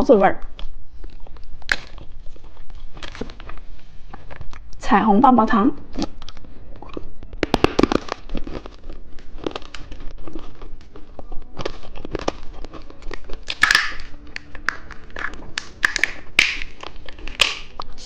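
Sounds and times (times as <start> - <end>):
plastic wrappers crinkling: 6.0 - 18.0
packets clicking and tapping: 7.4 - 8.6, 13.1 - 17.7.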